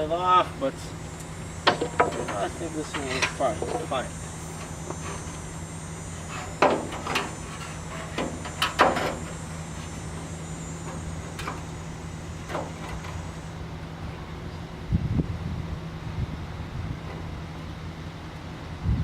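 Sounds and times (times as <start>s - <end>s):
steady low hum: 0.0s - 19.0s
tools and sheet metal clattering: 1.6s - 5.5s, 6.1s - 13.4s.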